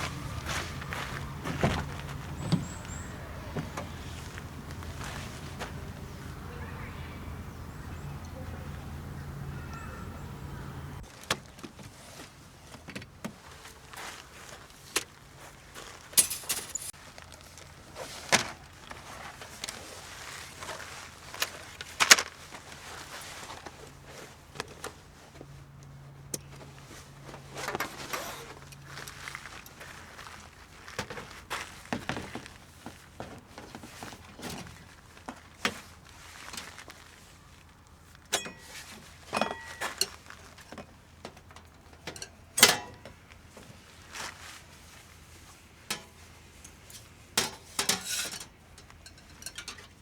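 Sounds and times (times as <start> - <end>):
gear being handled: 16.1 - 25.0.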